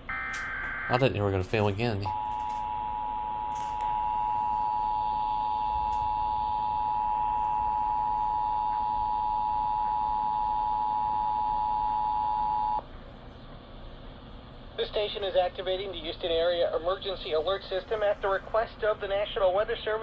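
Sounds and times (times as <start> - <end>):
harsh two-tone alarm: 0.0 - 12.8.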